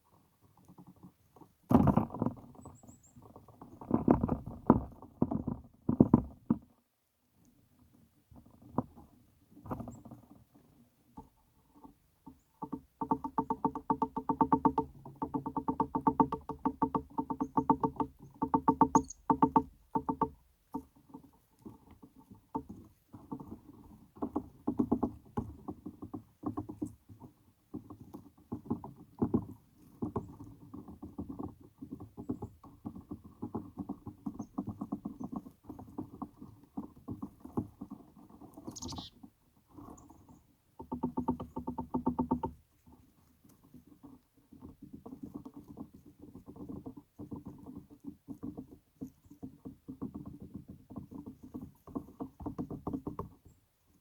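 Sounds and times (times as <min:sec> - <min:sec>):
high falling bird call: 0:38.7 - 0:39.2.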